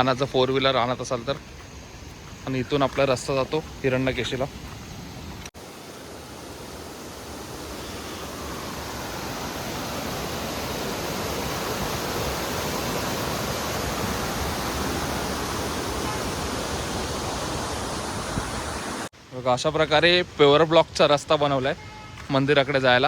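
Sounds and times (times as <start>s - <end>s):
stream rushing: 0.0s - 23.0s.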